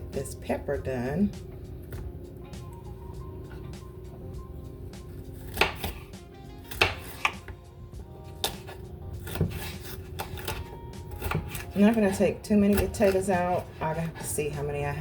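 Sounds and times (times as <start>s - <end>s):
soft background music: 0.0s - 15.0s
knife chopping on cutting board: 5.1s - 7.6s, 8.2s - 14.4s.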